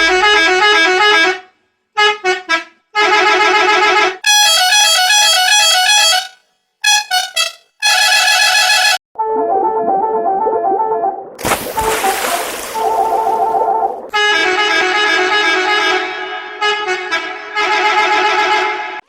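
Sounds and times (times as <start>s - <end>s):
musical bus horn warbling tune: 0.0s - 9.0s, 14.2s - 19.0s.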